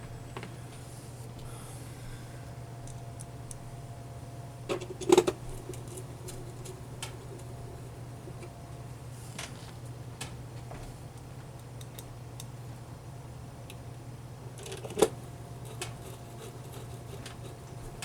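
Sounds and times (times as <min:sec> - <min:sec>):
turntable motor hum: 0:00.0 - 0:09.7, 0:14.4 - 0:18.0.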